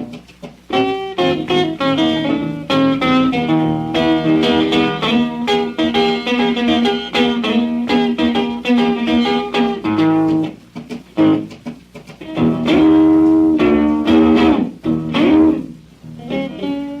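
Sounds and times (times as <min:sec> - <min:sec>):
electric blues guitar: 0:00.0 - 0:17.0.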